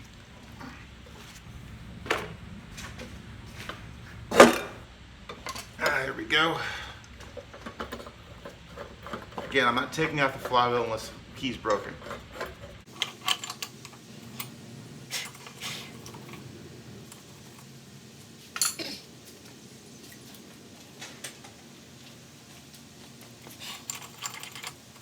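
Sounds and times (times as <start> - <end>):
metallic clinks of tools: 23.6 - 25.0.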